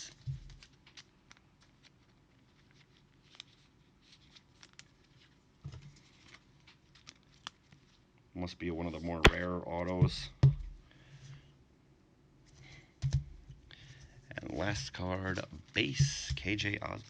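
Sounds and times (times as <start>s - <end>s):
trading cards being handled: 0.0s - 8.1s, 8.7s - 10.2s, 13.9s - 17.0s.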